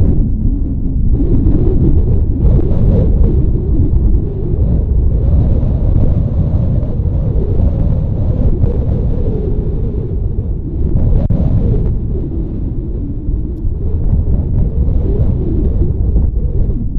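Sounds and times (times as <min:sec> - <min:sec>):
wind buffeting microphone: 0:00.0 - 0:16.9.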